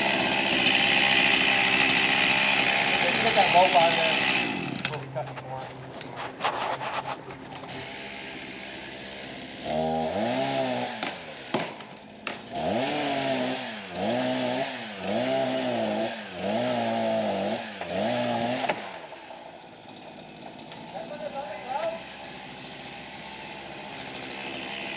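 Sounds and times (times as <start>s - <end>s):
chainsaw idling and revving: 0.0s - 6.0s, 6.7s - 24.9s.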